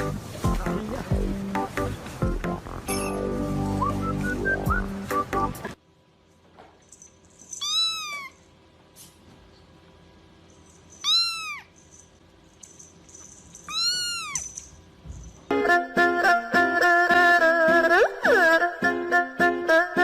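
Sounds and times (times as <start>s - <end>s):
cat meowing: 7.6s - 8.4s, 11.0s - 11.7s, 13.7s - 14.5s.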